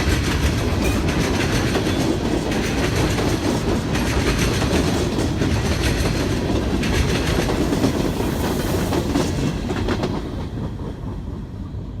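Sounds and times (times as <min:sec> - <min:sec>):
freight train wheels clicking: 0:00.0 - 0:12.0.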